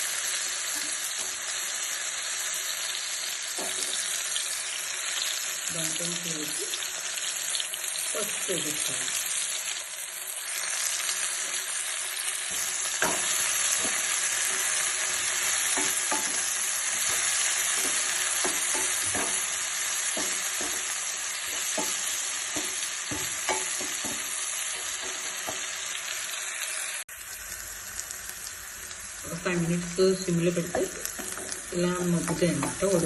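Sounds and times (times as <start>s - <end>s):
vegetables sizzling in hot oil: 0.0s - 33.0s
spoon tapping and scraping pan: 12.5s - 25.8s, 30.6s - 33.0s.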